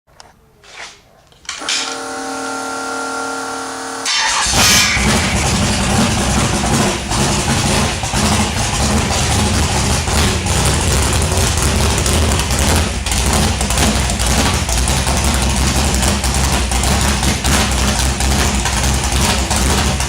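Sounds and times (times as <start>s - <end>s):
car engine idling unevenly: 4.1s - 20.0s.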